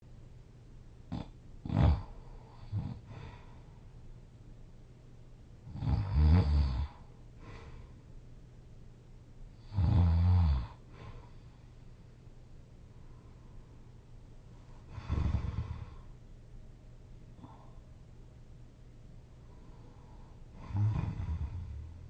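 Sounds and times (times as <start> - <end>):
person snoring: 1.1 - 3.5, 5.7 - 7.8, 9.6 - 11.4, 14.8 - 16.1, 19.7 - 22.0.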